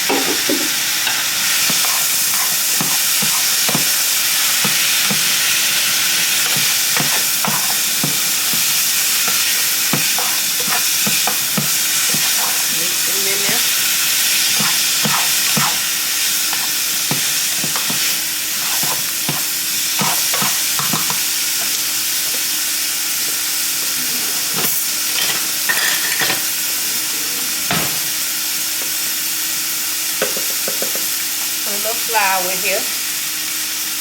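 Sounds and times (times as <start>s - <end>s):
mushrooms sizzling in a pan: 0.0s - 34.0s
utensil scraping a pan: 6.4s - 21.2s.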